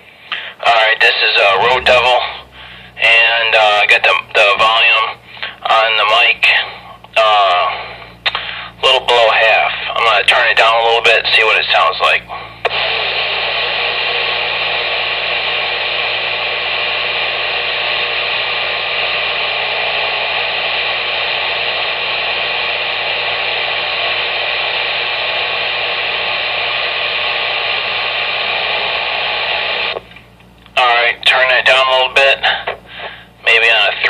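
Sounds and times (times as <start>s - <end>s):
radio speaker static hiss: 0.0s - 34.0s.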